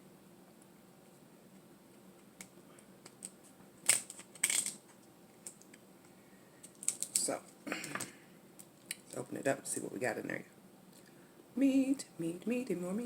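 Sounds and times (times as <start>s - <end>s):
crab shell cracking: 2.4s - 4.8s, 6.6s - 7.2s.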